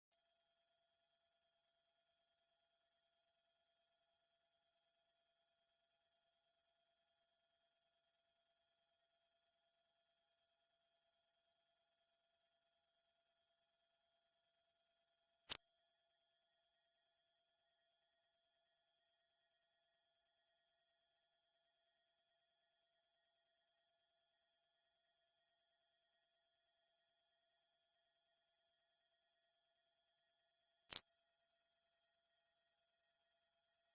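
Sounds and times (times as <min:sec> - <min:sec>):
brief click: 0:30.9 - 0:31.1.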